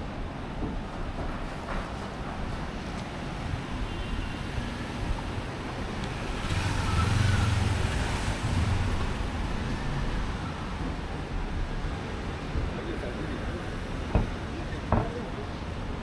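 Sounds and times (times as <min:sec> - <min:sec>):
street traffic noise: 0:00.0 - 0:16.0
vehicle passing close by: 0:06.2 - 0:10.4.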